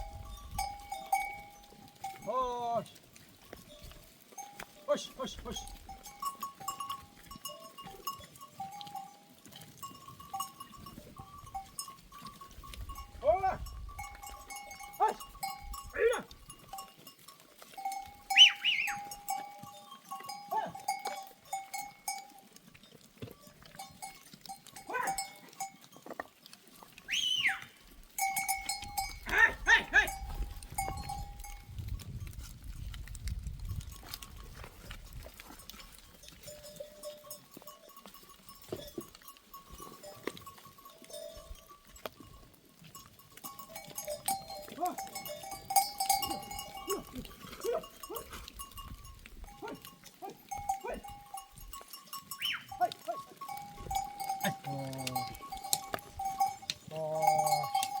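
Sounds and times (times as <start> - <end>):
goat bells clanking: 0.0 - 58.0
goats bleating: 29.0 - 30.3, 44.0 - 48.6, 52.4 - 58.0.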